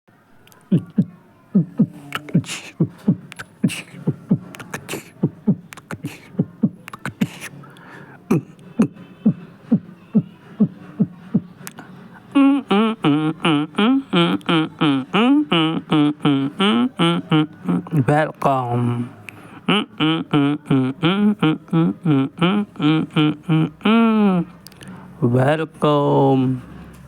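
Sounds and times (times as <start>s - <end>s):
beatbox percussion: 0.4s - 24.9s
voice with wavering pitch: 0.5s - 7.6s, 8.3s - 24.6s.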